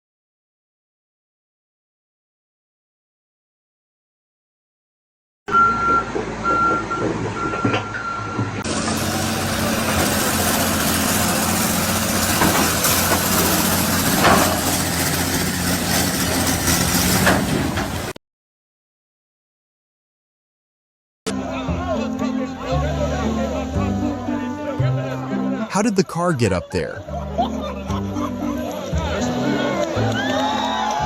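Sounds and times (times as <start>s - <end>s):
reversing alarm beeping: 5.5s - 8.6s
heavy engine running: 5.6s - 18.2s.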